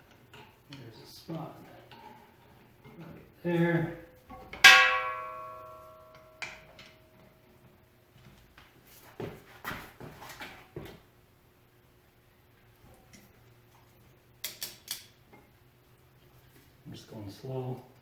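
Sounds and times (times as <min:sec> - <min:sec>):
tools clicking on metal: 0:14.4 - 0:15.2.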